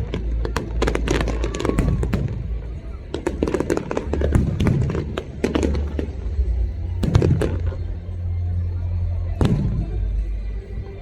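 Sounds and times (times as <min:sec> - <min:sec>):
fireworks cracks and pops: 0:00.0 - 0:06.2.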